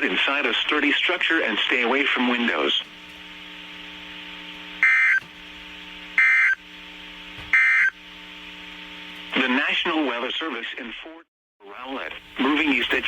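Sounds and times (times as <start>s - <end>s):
low buzzing hum: 0.0s - 9.8s.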